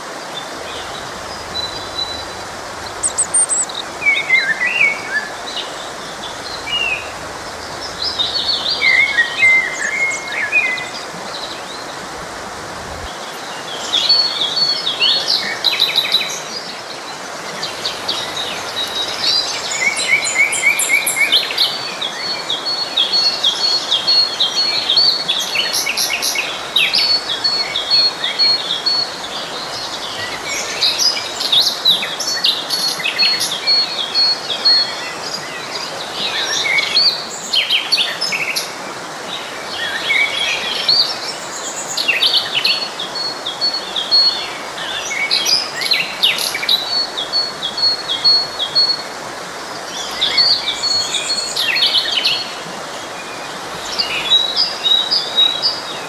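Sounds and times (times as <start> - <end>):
forest stream rushing: 0.0 - 56.0
songbirds chirping and singing: 0.1 - 56.0
bird repeating high notes: 2.9 - 3.9.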